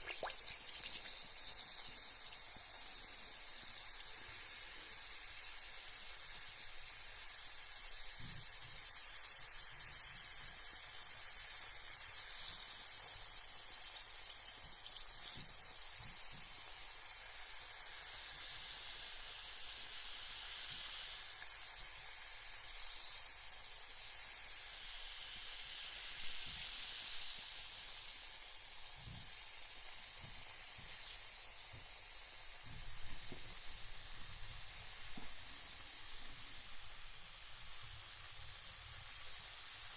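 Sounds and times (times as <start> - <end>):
bath bomb fizzing: 0.0 - 5.5.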